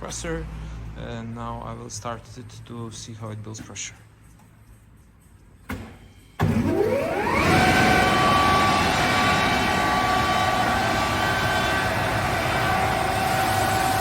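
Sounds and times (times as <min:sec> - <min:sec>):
air compressor whining: 0:06.4 - 0:14.0.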